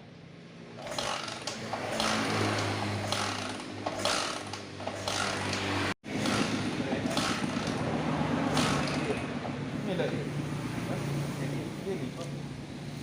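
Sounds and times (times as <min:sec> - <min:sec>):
small motorcycle engine running: 0:00.8 - 0:09.3.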